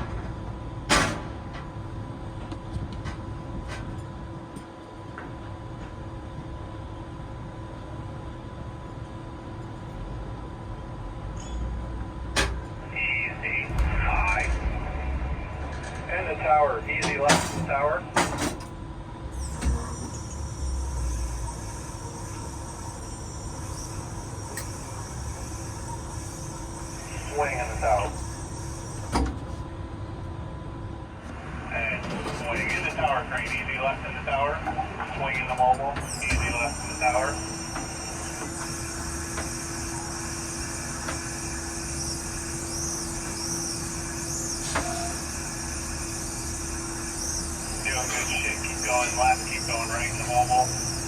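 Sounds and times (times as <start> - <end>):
crane electric hum and whine: 0.0 - 51.0
deep rumble: 13.2 - 18.2.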